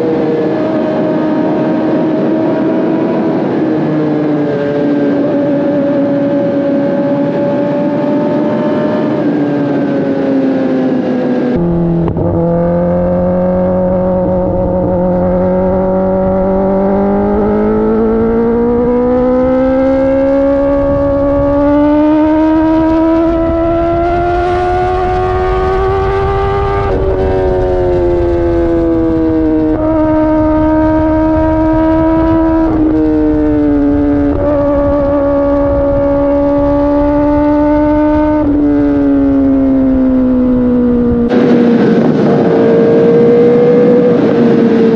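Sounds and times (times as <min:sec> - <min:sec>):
wind rumble on microphone: 0:00.0 - 0:44.9
motorcycle engine running: 0:10.8 - 0:44.9.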